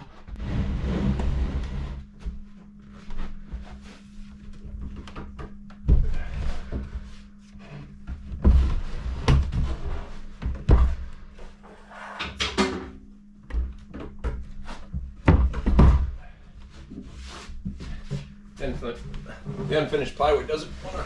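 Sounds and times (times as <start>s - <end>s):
cabinet scraping on floor: 0.3s - 2.1s
heavy wooden thumps: 15.1s - 16.3s.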